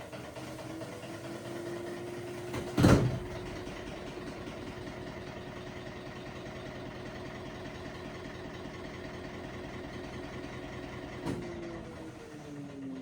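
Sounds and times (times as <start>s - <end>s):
washing machine running: 0.0s - 13.0s.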